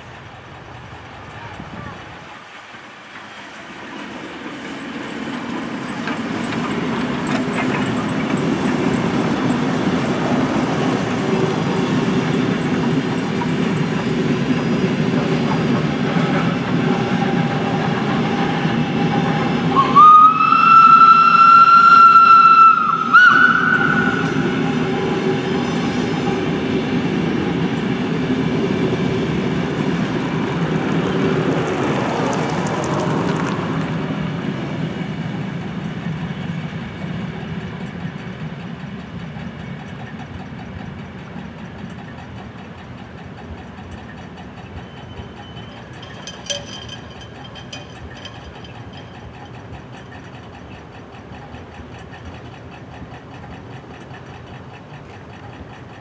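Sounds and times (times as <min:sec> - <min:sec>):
train rumbling past: 0:00.0 - 0:56.0
train horn blast: 0:19.7 - 0:25.3.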